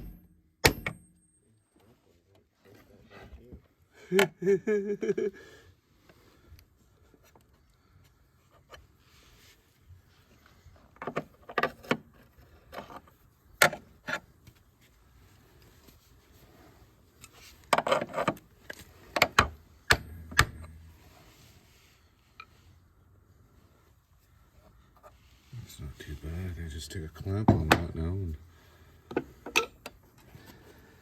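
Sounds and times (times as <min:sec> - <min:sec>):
metal tools clanking: 0:19.9 - 0:21.1.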